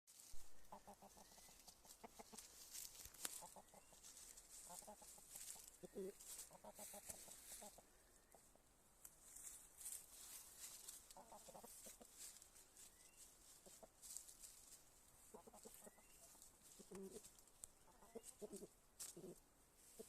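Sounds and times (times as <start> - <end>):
chicken drawn-out call: 0.2 - 8.0
chickens clucking: 0.2 - 20.0.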